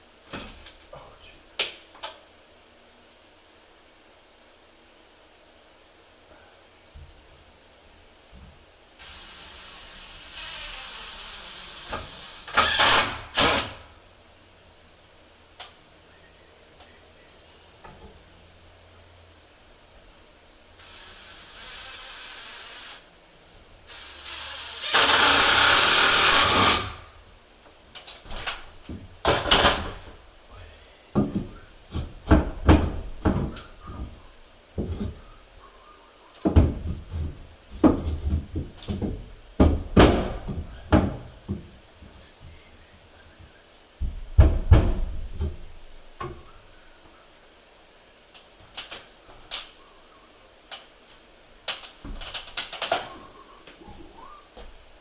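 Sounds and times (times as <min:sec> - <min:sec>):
power drill running: 0:09.0 - 0:13.8, 0:20.8 - 0:23.0, 0:23.9 - 0:27.1
knocks and clunks of parts: 0:27.9 - 0:30.2, 0:31.2 - 0:35.4, 0:36.4 - 0:42.6, 0:44.0 - 0:46.5, 0:51.7 - 0:54.8.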